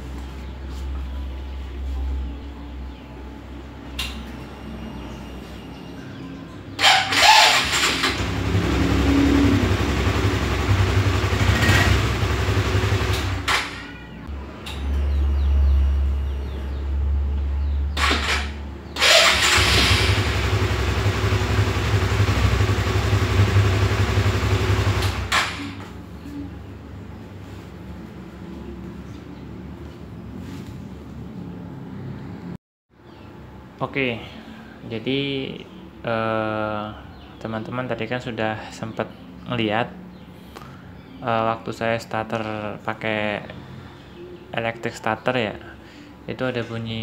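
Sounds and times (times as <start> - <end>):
electric starter cranking: 6.8 - 13.8, 18.0 - 25.8
motorcycle engine running: 6.8 - 13.8, 18.0 - 26.0.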